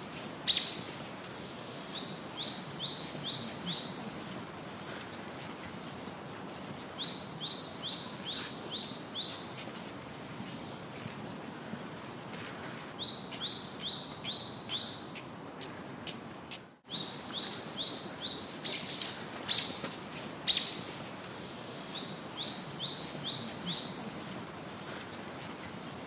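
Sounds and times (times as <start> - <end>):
steady background hiss: 0.0 - 26.0
bird chirping: 13.0 - 15.3, 16.9 - 19.8, 22.0 - 24.0.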